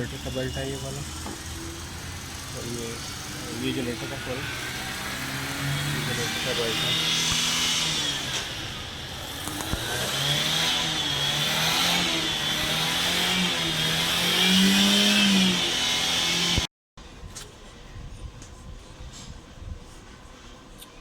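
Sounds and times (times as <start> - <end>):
squealing alternator belt: 0.0 - 16.5.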